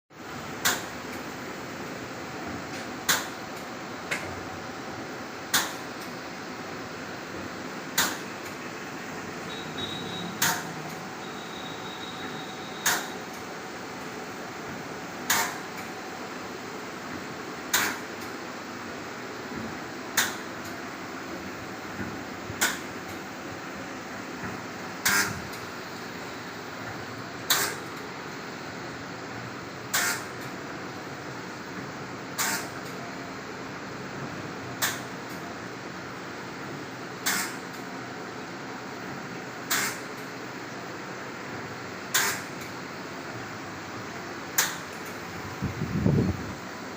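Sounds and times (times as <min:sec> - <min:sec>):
machine humming: 0:00.2 - 0:32.5
sharp mechanical clack: 0:00.6 - 0:01.2, 0:05.5 - 0:06.1, 0:08.0 - 0:08.6, 0:09.8 - 0:11.0, 0:12.8 - 0:13.4, 0:15.3 - 0:15.9, 0:17.7 - 0:18.3, 0:20.2 - 0:20.8, 0:22.6 - 0:23.2, 0:25.0 - 0:25.6, 0:27.5 - 0:28.0, 0:29.9 - 0:30.5, 0:32.4 - 0:33.0, 0:34.8 - 0:35.4, 0:37.2 - 0:37.9, 0:39.7 - 0:40.3, 0:42.1 - 0:42.7, 0:44.6 - 0:45.2.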